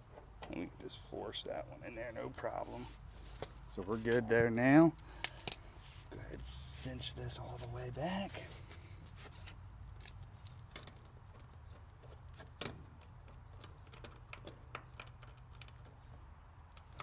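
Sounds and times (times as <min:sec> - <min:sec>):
metallic clicks of hand tools: 0:05.2 - 0:05.6.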